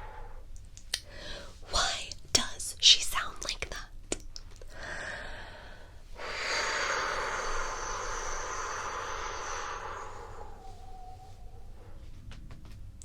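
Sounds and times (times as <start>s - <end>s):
woman breathing slowly: 0.0s - 1.7s, 4.6s - 12.4s.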